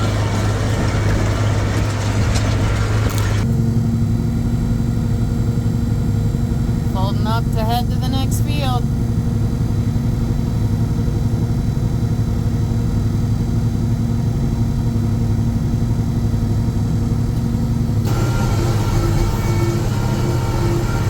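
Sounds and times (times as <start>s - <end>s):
tractor engine droning: 0.0s - 21.0s
thin whine: 17.3s - 21.0s.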